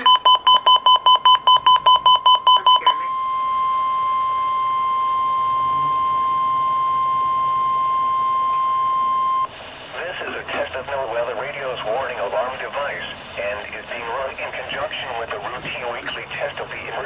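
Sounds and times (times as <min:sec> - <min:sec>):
rapid electronic beeping: 0:00.0 - 0:09.5
steady alarm tone: 0:00.0 - 0:09.8.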